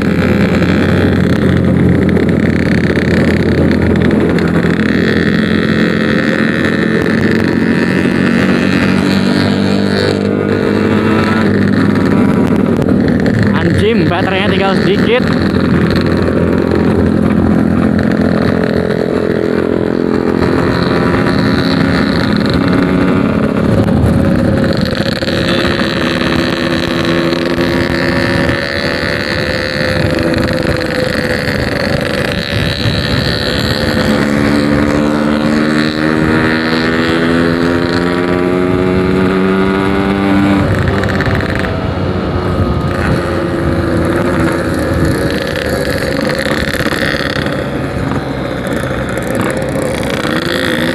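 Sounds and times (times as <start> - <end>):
two-stroke motorcycle accelerating: 0.0 - 50.9.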